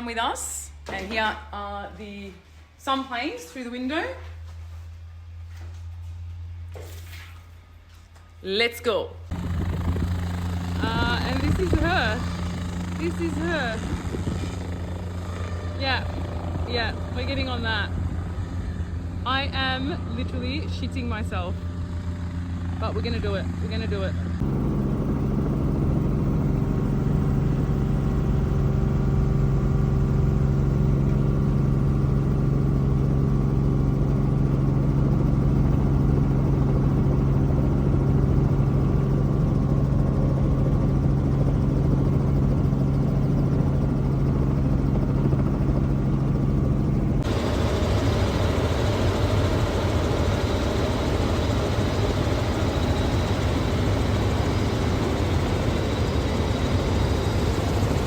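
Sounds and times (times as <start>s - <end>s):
helicopter engine and rotor rush: 9.3s - 58.0s
helicopter engine hum: 9.3s - 58.0s.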